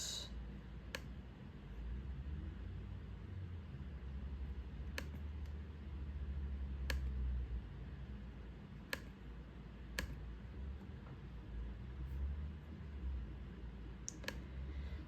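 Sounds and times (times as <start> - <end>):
low steady rumble: 0.0 - 15.0.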